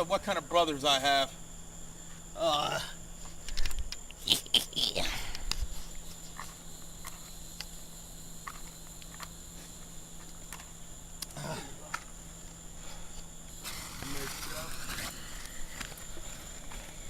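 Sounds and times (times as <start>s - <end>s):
firework crackling pops: 13.5s - 16.2s.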